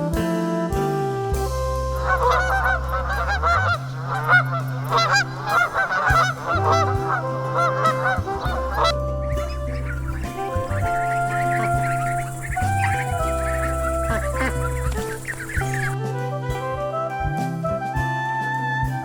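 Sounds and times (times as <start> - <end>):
background music sustained notes: 0.0 - 19.0
flock of birds chattering: 2.0 - 16.0.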